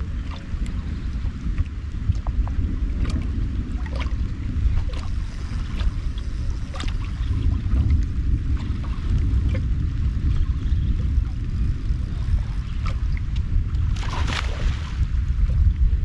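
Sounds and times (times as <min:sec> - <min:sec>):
wind buffeting microphone: 0:00.0 - 0:16.0.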